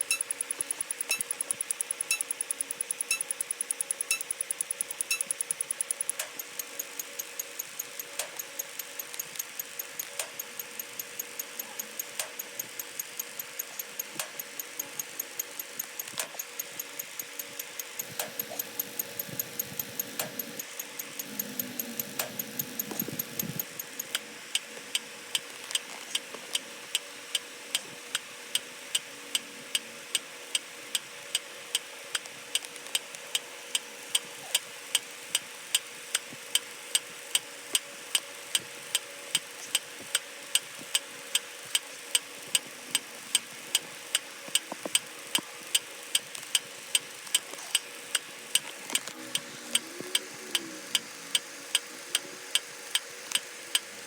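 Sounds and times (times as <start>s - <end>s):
sharp clicks: 0.0s - 24.2s
faint steady hum: 0.0s - 54.0s.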